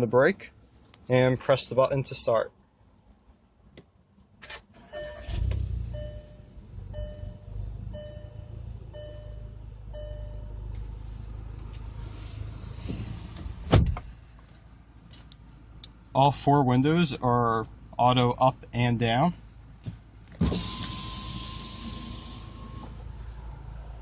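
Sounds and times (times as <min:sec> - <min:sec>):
car engine starting and idling: 0:03.6 - 0:24.0
dashboard chime: 0:04.9 - 0:10.7
power window running: 0:20.4 - 0:23.0.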